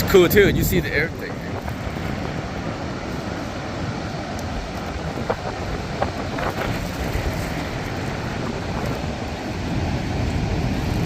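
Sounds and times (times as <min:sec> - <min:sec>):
low roar of waterfall and boat: 0:00.0 - 0:11.0.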